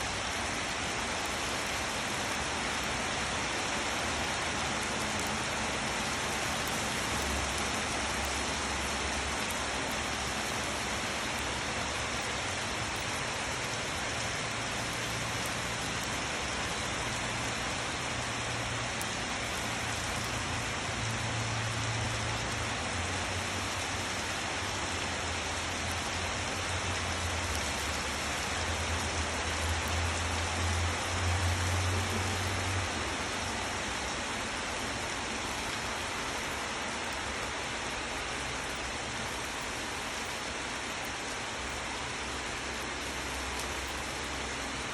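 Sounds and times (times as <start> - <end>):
steady rain: 0.0 - 44.9.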